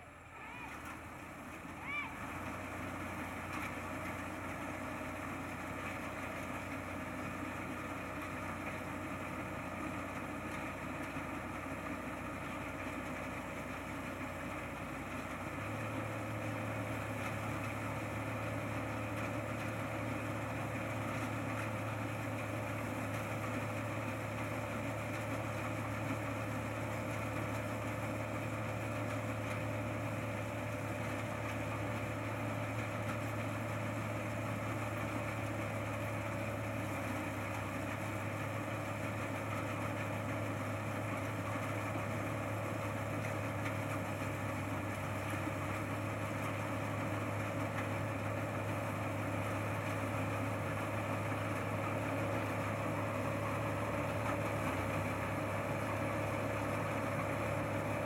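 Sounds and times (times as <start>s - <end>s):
combine harvester engine running: 0.0s - 58.0s.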